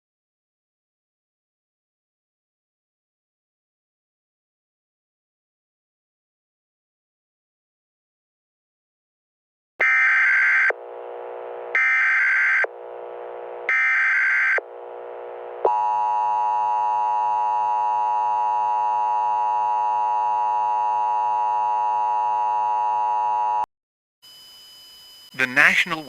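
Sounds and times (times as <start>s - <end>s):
shrill data bursts: 24.3s - 26.0s
two-tone attention signal: 25.4s - 26.0s.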